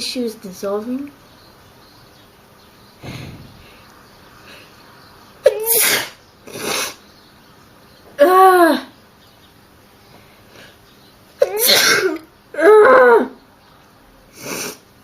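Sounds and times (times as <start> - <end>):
person sneezing: 5.4 - 7.0, 11.4 - 12.2.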